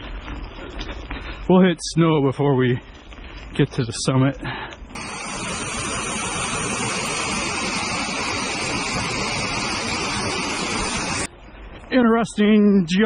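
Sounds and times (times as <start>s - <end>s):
loud rushing noise: 5.0s - 11.3s.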